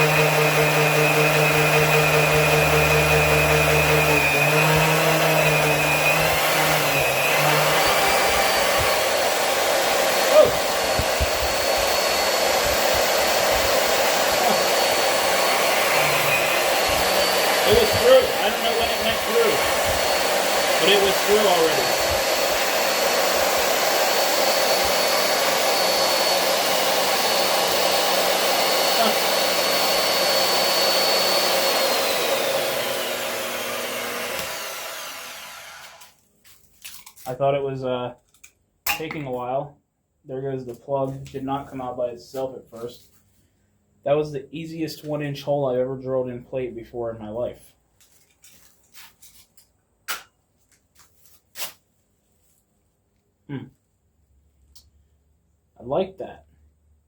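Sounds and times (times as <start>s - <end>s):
magnetic drill boring through steel: 0.0s - 36.1s.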